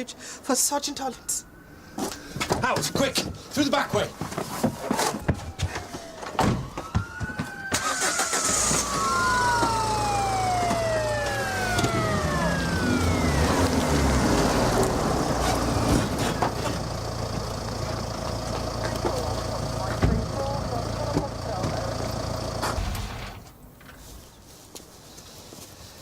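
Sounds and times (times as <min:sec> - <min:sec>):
police siren wailing: 0:00.0 - 0:23.4
car engine running: 0:08.5 - 0:24.1.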